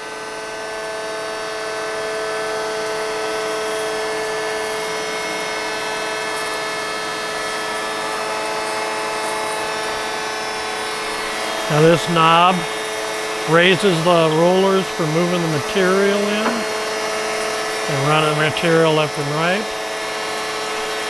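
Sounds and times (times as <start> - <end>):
bandsaw hum and whine: 9.4 - 21.0.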